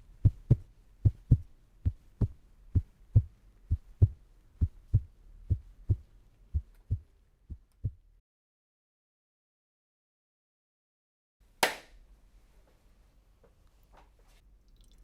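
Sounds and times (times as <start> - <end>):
heartbeat thumping: 0.2 - 8.1.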